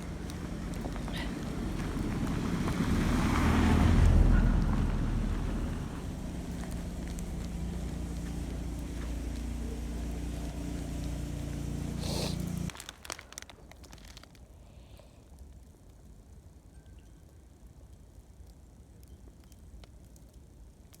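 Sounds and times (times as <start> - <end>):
vehicle engine low hum: 0.0 - 12.7.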